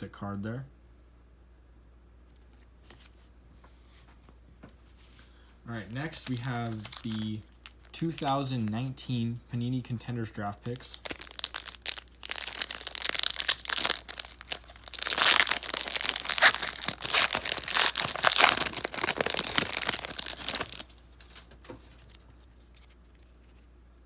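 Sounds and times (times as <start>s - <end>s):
wrapper tearing and crinkling: 5.9s - 8.6s, 10.8s - 23.3s.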